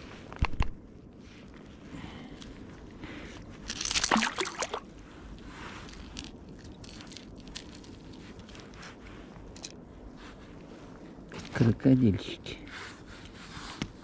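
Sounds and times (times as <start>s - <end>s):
water splashing and sloshing: 2.6s - 9.0s.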